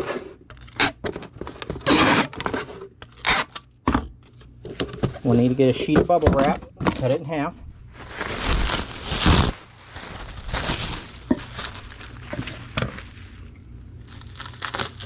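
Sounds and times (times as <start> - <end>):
bubble wrap rustling and crinkling: 7.8 - 15.0.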